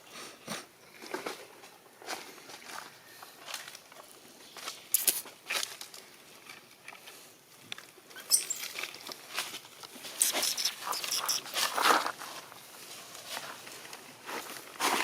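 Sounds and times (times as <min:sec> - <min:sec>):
monkeys rustling: 0:08.0 - 0:13.8.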